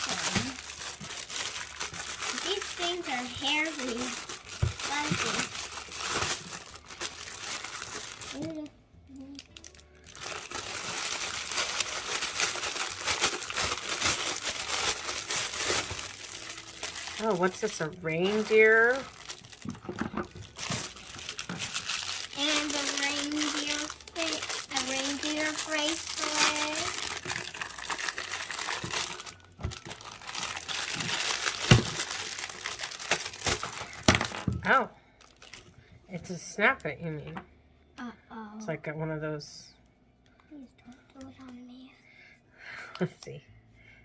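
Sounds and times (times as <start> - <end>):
plastic packaging crinkling: 0.0 - 8.7, 9.3 - 34.6, 35.2 - 35.7.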